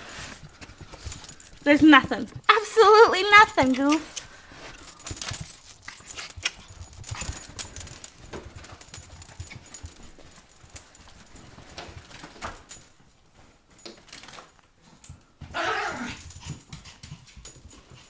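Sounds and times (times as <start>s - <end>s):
dog moving about: 0.1s - 18.0s
light clicks and jingles: 0.1s - 18.0s.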